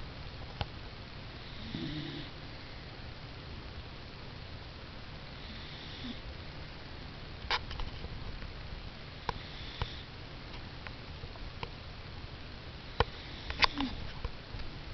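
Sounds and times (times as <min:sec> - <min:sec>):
low room hum: 0:00.0 - 0:14.9.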